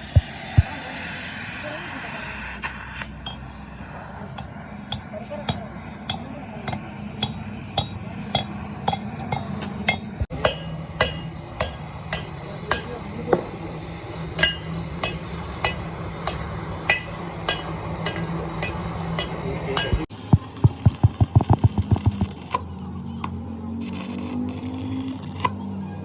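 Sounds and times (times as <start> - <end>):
hammer tapping on metal: 4.4 - 13.7, 14.4 - 22.4.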